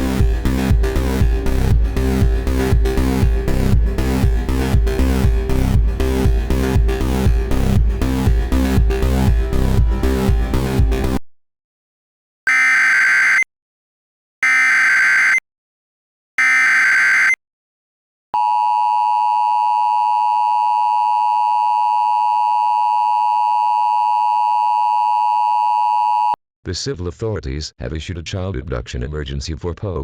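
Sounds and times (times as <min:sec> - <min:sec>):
electronic dance music: 0:00.0 - 0:11.2.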